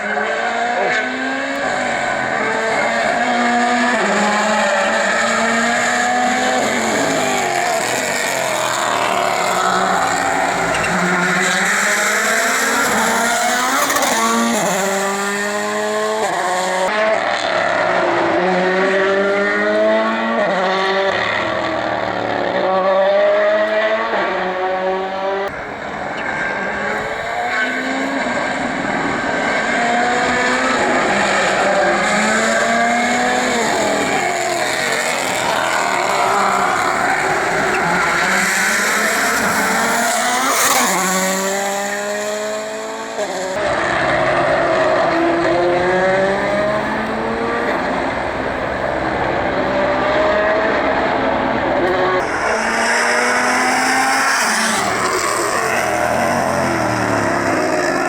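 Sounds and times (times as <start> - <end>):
rally car engines revving: 0.0 - 58.0
tyre squeal: 7.0 - 12.0.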